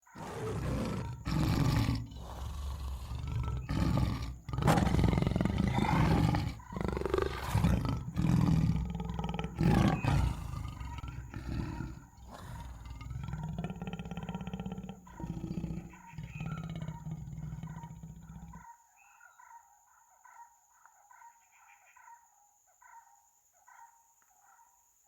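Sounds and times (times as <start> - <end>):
tiger roaring: 0.0 - 18.6.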